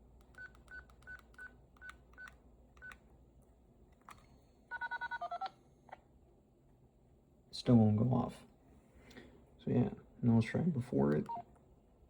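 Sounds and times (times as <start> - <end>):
keypad beeps: 11.2 - 11.4.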